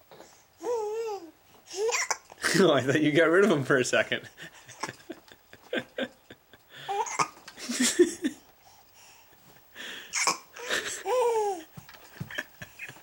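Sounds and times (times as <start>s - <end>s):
baby babbling: 0.6s - 2.2s, 11.0s - 11.7s
baby hiccuping: 1.8s - 2.2s, 6.9s - 7.4s, 10.1s - 10.5s.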